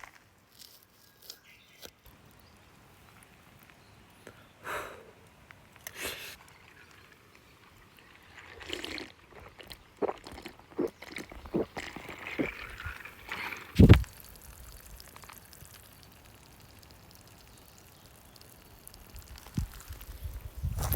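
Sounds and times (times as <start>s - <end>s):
liquid being poured: 6.4s - 20.9s.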